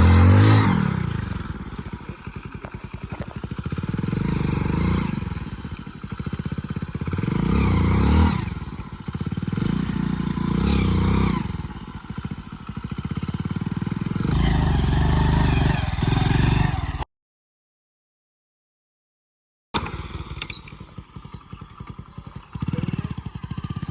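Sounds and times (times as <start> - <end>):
motorcycle engine revving: 0.0 - 17.1, 19.8 - 23.9.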